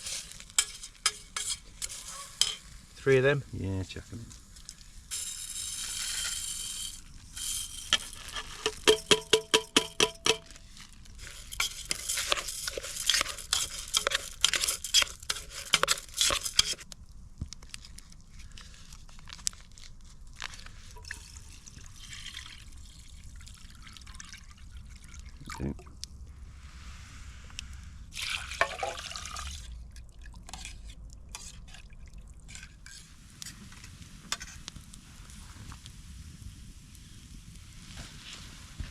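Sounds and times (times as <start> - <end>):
metal utensil stirring: 0.0 - 2.7, 4.6 - 16.8, 30.4 - 31.8, 32.5 - 34.6
food sizzling in a pan: 0.0 - 8.9, 11.2 - 16.8.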